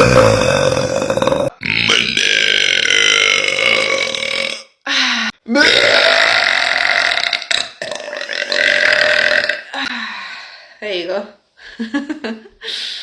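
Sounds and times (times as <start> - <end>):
woman burping loudly: 0.0 - 4.9, 5.5 - 9.9.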